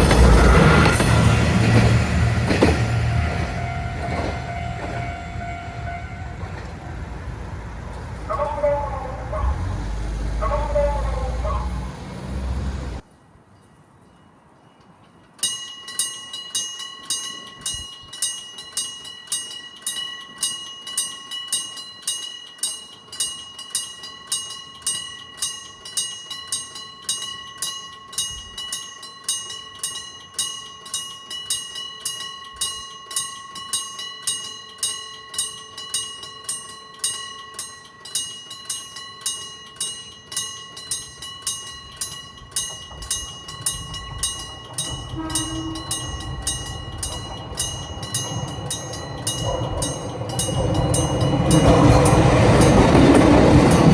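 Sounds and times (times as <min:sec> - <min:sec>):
low train rumble: 0:00.0 - 0:13.1, 0:40.5 - 0:53.9
railroad crossing bell ringing: 0:00.0 - 0:53.9.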